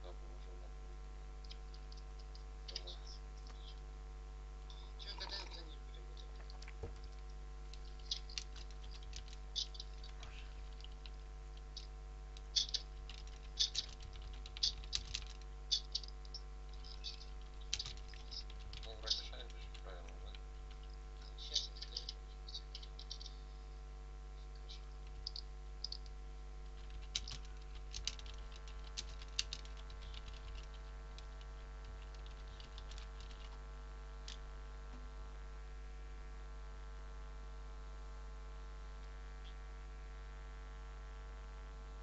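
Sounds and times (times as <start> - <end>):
electrical hum: 0.0 - 42.0
computer keyboard keys clicking: 6.4 - 18.9, 20.6 - 21.0, 25.0 - 33.6.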